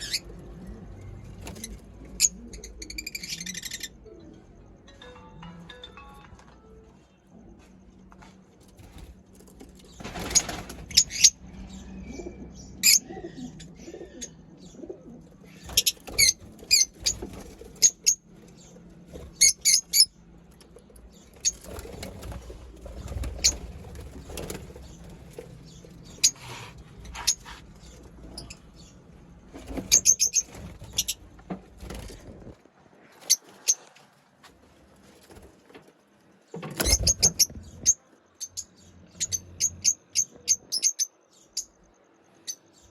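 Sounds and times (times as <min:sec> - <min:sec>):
lovebirds chirping: 0:09.9 - 0:31.3, 0:36.8 - 0:42.9.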